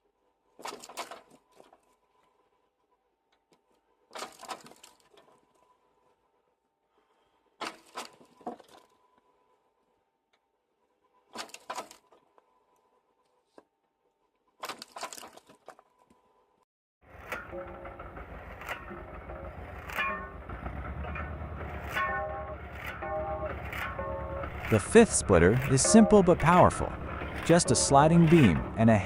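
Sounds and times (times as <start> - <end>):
logs cracking as they are chopped: 0.6 - 1.7, 4.1 - 5.2, 7.6 - 8.9, 11.3 - 12.1, 14.6 - 15.8.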